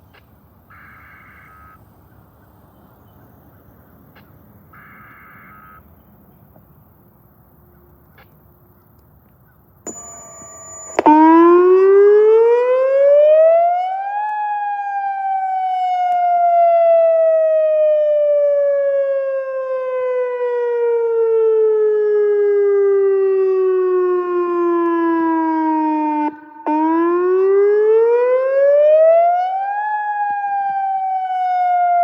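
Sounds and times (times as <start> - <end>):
electronic radio buzz: 0.7 - 1.8, 4.8 - 5.9
tornado siren wailing: 0.7 - 1.9, 4.7 - 5.9, 9.9 - 32.0.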